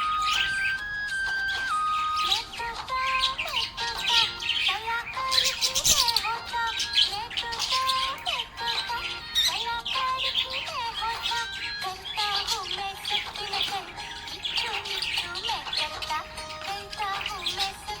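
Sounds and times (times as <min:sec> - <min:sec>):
melodic tune: 0:00.0 - 0:09.5
budgerigar chirping and warbling: 0:00.0 - 0:18.0.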